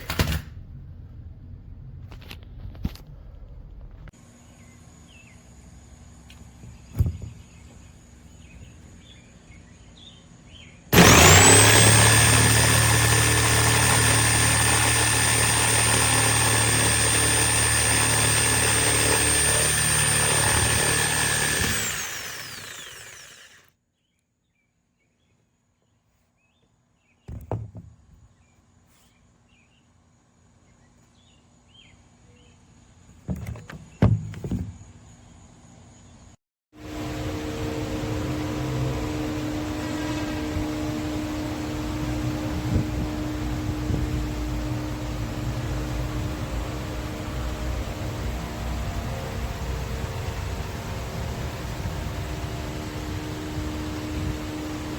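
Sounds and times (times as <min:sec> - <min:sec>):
jigsaw motor whining: 0:10.9 - 0:23.7, 0:36.8 - 0:54.9.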